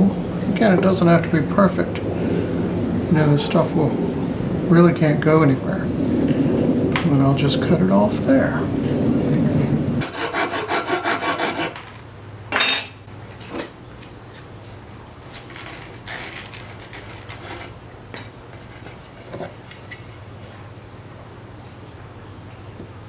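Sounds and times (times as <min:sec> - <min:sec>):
hand saw cutting wood: 0:10.0 - 0:11.8.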